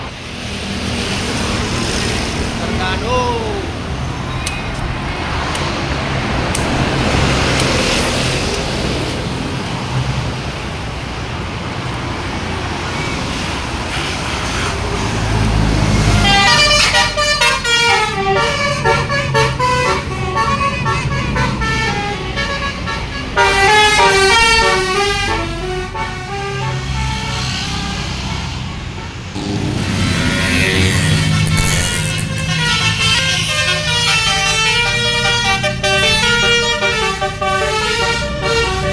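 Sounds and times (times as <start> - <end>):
bus engine rumbling: 0.0 - 38.9
passing traffic: 0.0 - 38.9
multi-tone musical bus horn: 15.4 - 38.9.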